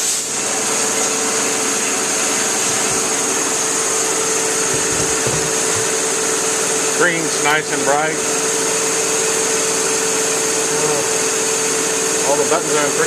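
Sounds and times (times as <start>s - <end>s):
machinery hum with whining tone: 0.0s - 13.0s
low thumps: 4.6s - 6.3s.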